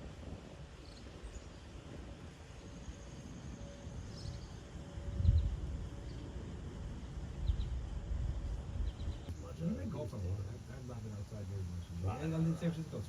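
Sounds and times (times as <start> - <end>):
wind rumbling on microphone: 0.0 - 9.4
faint bird chirps: 2.4 - 6.4.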